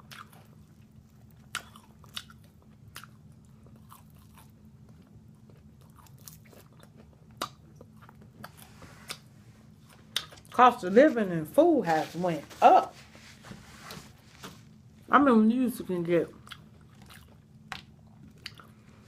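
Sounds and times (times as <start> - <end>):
chewing crispy food: 0.0 - 10.7, 16.3 - 19.0.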